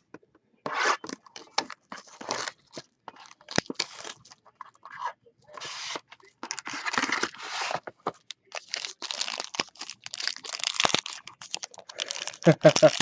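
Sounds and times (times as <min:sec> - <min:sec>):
plastic wrapping crinkling and tearing: 0:01.2 - 0:04.4, 0:06.4 - 0:13.0.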